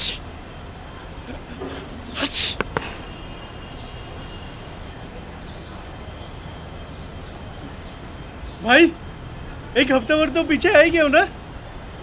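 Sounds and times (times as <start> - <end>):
man sneezing: 0.0 - 0.2, 1.3 - 2.8.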